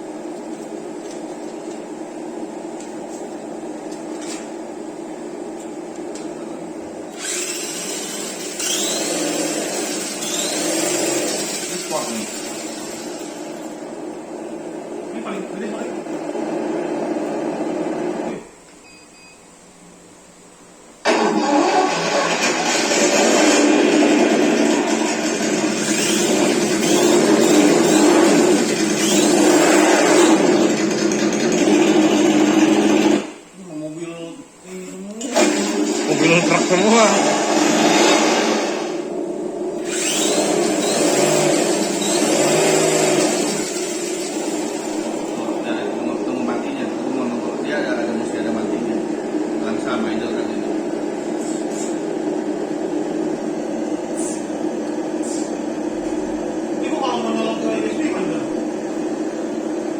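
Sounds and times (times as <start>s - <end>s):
short rising whines: 7.0s - 15.0s, 21.0s - 30.8s
simulated truck engine from small speaker: 21.1s - 33.3s.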